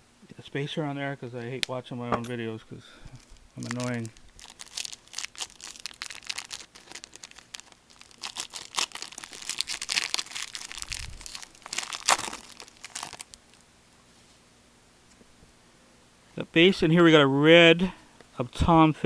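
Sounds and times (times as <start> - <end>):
plastic packaging crinkling: 3.2 - 13.6.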